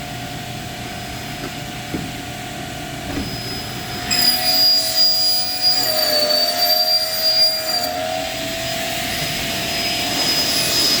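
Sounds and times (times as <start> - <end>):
circular saw whining: 3.3 - 11.0.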